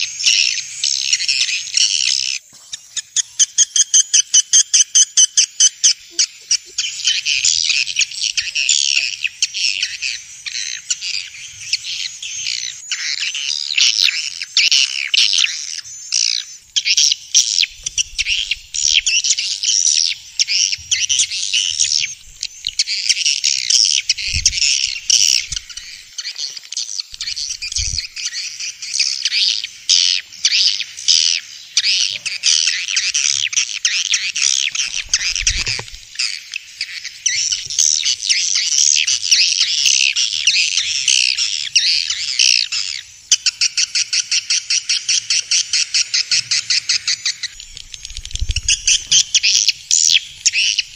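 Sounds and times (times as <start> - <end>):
rapid clicking chirps: 17.4 - 26.4, 27.2 - 28.5, 34.6 - 36.3, 47.5 - 50.9
swiftlets twittering: 21.6 - 26.2, 27.2 - 28.4.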